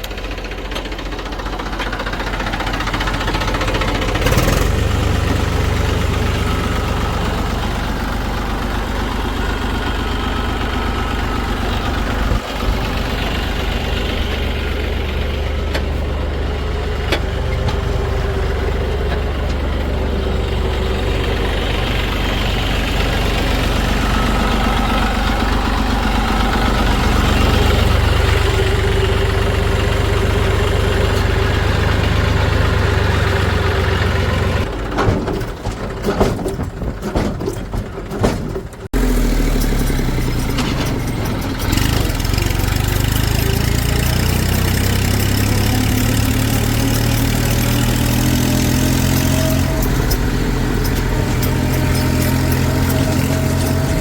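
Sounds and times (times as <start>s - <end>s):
vehicle engine running: 0.0s - 54.0s
irregular clicking and knocking: 34.6s - 38.9s, 40.0s - 54.0s.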